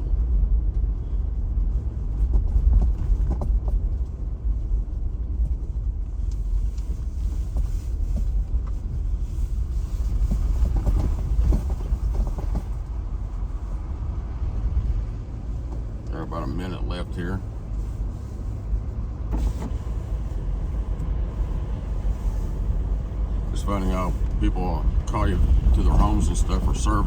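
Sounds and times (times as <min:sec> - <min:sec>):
knocks and rattles over bumps: 0:00.0 - 0:04.5, 0:09.6 - 0:13.6, 0:14.7 - 0:16.1
car engine and road noise: 0:00.0 - 0:27.0.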